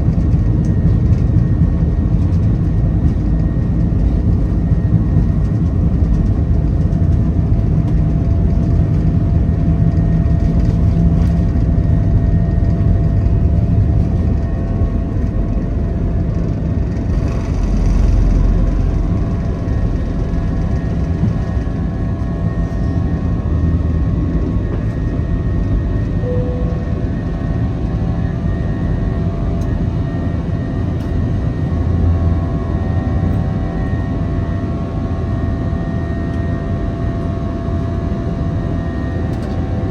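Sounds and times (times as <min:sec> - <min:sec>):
deep rumble: 0:00.0 - 0:39.9
jet engine and airflow rush: 0:00.0 - 0:39.9
short faint tone: 0:26.2 - 0:27.2.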